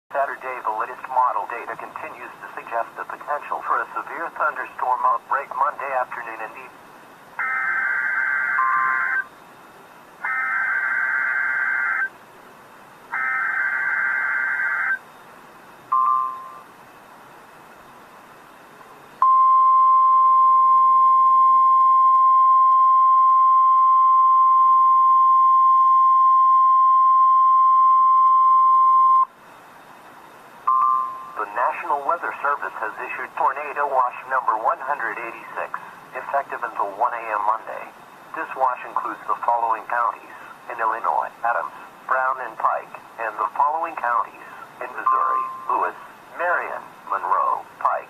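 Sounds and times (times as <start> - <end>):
steady warning alarm tone: 7.4 - 9.3, 10.2 - 12.1, 13.2 - 15.0, 45.0 - 46.0
short beep: 19.2 - 29.3, 45.1 - 45.7.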